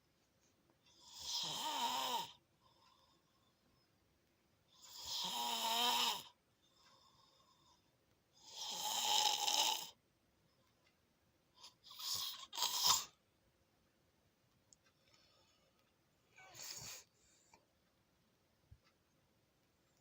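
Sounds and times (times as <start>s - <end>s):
loud rattling snores: 1.0s - 2.4s, 4.8s - 6.4s, 8.4s - 10.0s, 11.6s - 13.2s
faint breaths: 2.3s - 4.1s, 6.6s - 8.5s, 14.8s - 17.8s.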